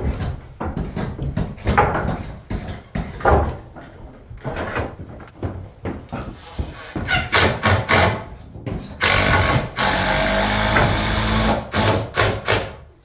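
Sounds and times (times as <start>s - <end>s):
power tool running: 9.0s - 12.7s.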